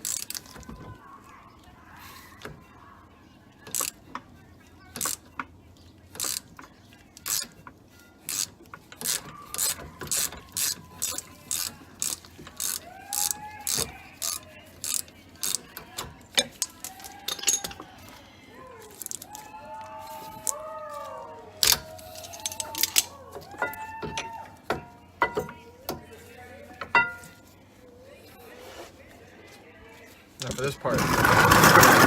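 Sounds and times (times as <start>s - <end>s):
ratchet wrench clicking: 0.0s - 0.6s, 3.7s - 4.1s, 4.9s - 5.4s, 6.1s - 7.6s, 8.2s - 17.9s, 18.9s - 19.4s.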